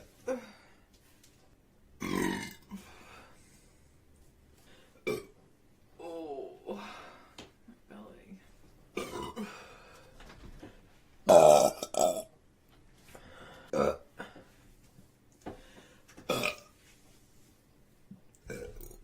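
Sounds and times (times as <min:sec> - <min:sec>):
woman burping: 0:02.0 - 0:02.8, 0:05.1 - 0:05.3, 0:09.0 - 0:09.6, 0:11.3 - 0:12.3, 0:13.7 - 0:14.3, 0:16.3 - 0:16.7, 0:18.4 - 0:19.0.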